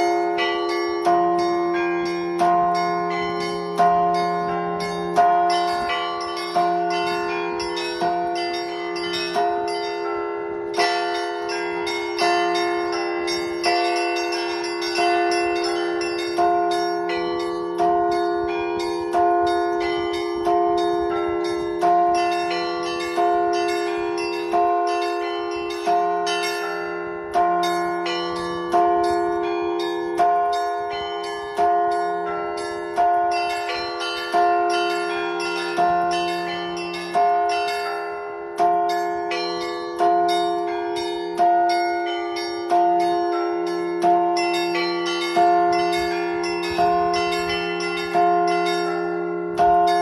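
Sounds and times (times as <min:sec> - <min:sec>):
big bell strokes: 0:00.0 - 0:50.0
small bells chiming: 0:00.0 - 0:50.0.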